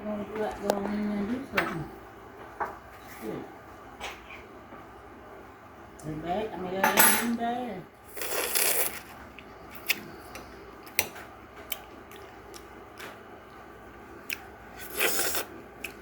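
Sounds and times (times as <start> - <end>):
soft chewing: 8.1 - 16.0.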